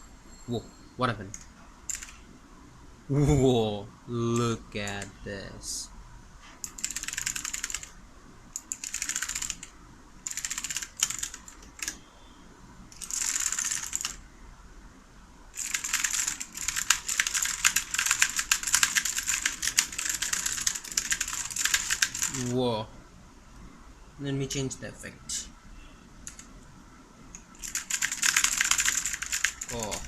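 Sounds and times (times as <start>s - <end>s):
mechanical keyboard typing: 1.3s - 2.2s, 6.6s - 7.9s, 8.6s - 12.0s, 12.9s - 14.2s, 15.6s - 22.5s, 26.3s - 26.5s, 27.3s - 30.0s.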